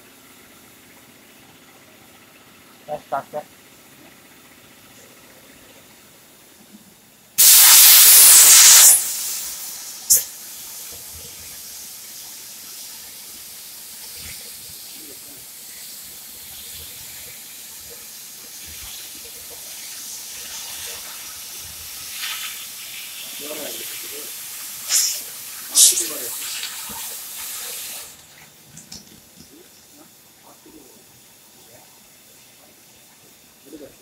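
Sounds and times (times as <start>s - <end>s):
gas torch hissing: 7.4s - 34.0s.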